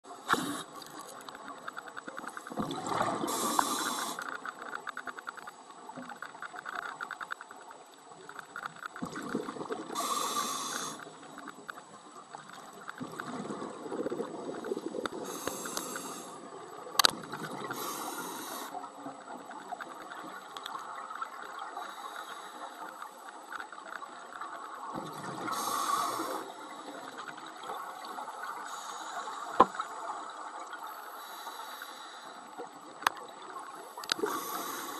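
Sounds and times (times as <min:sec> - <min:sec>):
faint crackling: 0:00.1 - 0:34.9
regulator inhale hissing: 0:00.3 - 0:00.8, 0:03.2 - 0:04.4, 0:09.9 - 0:11.2, 0:15.2 - 0:16.4, 0:17.7 - 0:18.8, 0:25.5 - 0:26.6, 0:28.7 - 0:29.7, 0:30.9 - 0:32.5, 0:34.1 - 0:34.9
exhaled bubbles rushing: 0:02.6 - 0:03.5, 0:09.0 - 0:10.0, 0:13.0 - 0:15.3.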